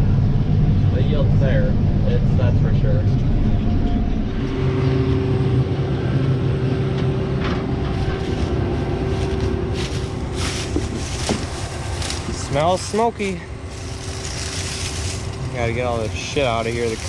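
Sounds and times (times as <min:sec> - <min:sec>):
combine harvester humming: 0:00.0 - 0:17.0.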